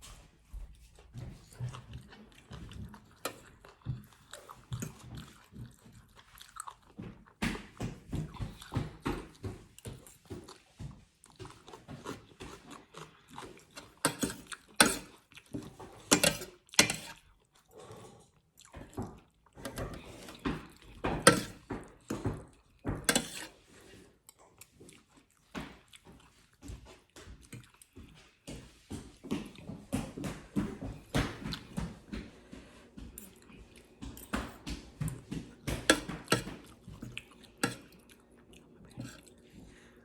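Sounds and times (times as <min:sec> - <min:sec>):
person chewing food: 0:00.5 - 0:40.0
food crunching: 0:01.3 - 0:07.4, 0:08.2 - 0:26.6, 0:27.4 - 0:28.2, 0:35.1 - 0:40.0.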